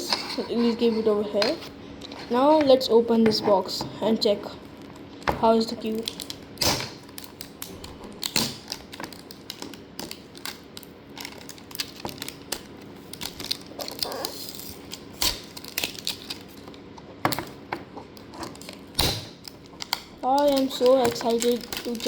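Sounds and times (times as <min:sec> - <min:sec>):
hands handling packaging box: 0:11.2 - 0:22.0.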